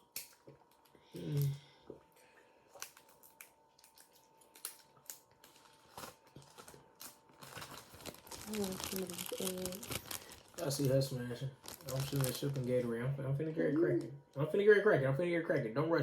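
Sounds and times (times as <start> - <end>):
crab shells cracking: 2.7 - 11.0, 11.6 - 12.8.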